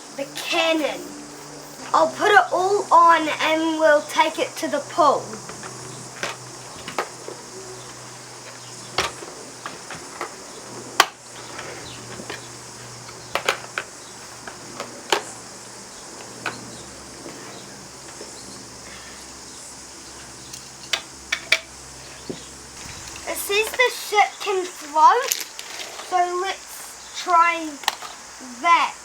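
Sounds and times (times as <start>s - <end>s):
crickets chirping: 0.0s - 29.0s
plastic toy parts clicking: 25.2s - 26.1s, 27.8s - 28.2s.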